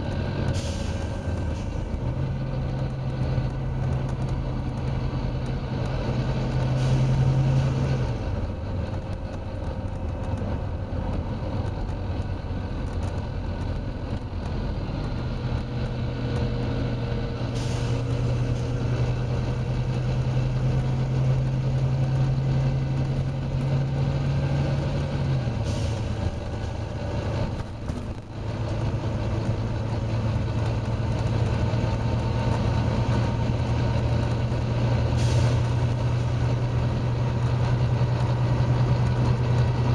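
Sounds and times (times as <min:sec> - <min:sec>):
bus diesel engine droning: 0:00.0 - 0:39.9
air brake hisses: 0:00.5 - 0:01.7, 0:06.7 - 0:07.8, 0:17.5 - 0:18.2, 0:25.6 - 0:26.2, 0:35.1 - 0:35.8.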